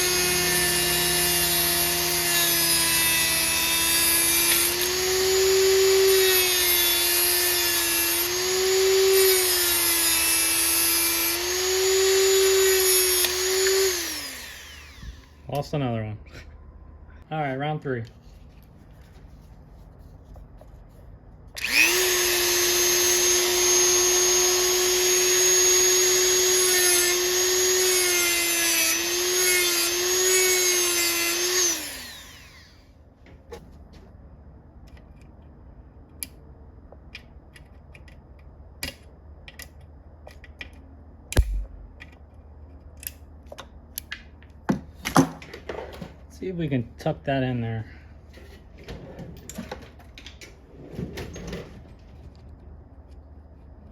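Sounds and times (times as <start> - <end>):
rotary tool cutting metal: 0.0 - 15.4, 21.6 - 32.8.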